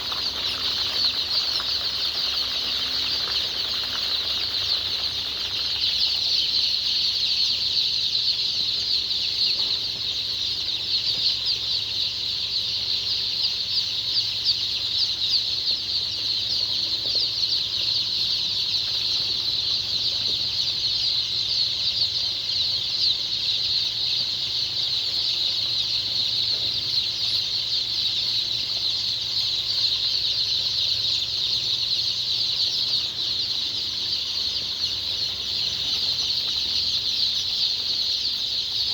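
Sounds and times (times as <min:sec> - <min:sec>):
chicks peeping: 0:00.0 - 0:38.9.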